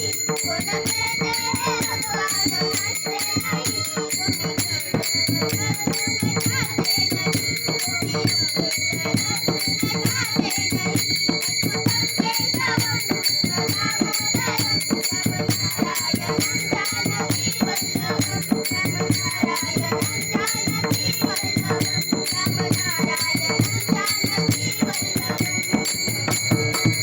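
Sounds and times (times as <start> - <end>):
instrumental music with jingling percussion: 0.0 - 27.0.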